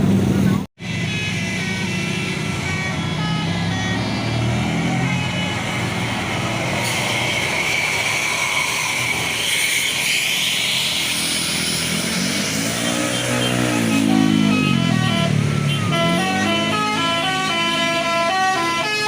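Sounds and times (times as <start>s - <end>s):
bus driving past: 0.0s - 19.0s
bus horn: 0.8s - 6.2s, 12.3s - 19.0s.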